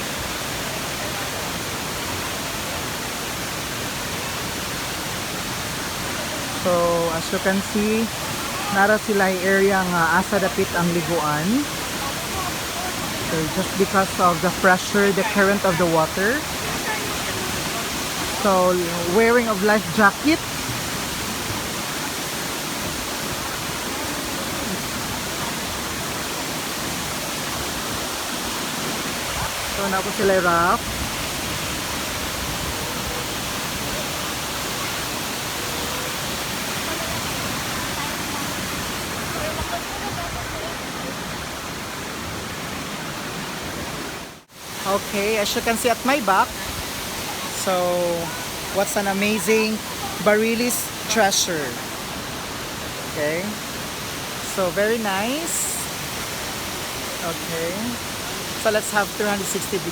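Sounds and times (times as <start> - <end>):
waterfall rushing: 0.0 - 59.9.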